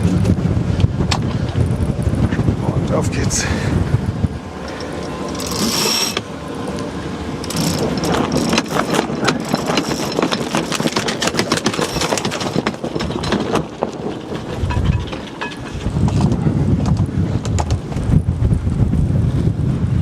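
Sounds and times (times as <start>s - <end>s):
wind noise: 0.0s - 20.0s
winch ratcheting clicks: 4.6s - 6.3s, 7.4s - 16.3s.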